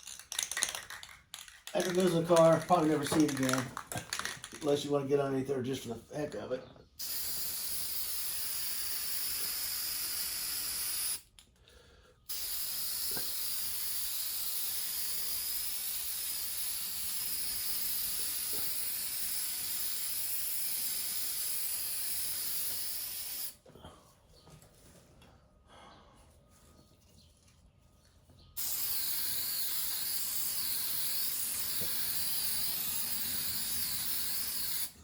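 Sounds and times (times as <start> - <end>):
spray paint hissing: 0.0 - 4.6, 7.0 - 11.3, 12.3 - 23.6, 28.6 - 35.0.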